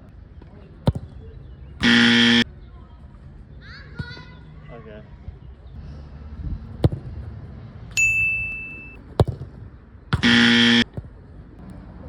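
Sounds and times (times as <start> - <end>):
loud flat buzzer tone: 1.8 - 2.4, 10.2 - 10.8.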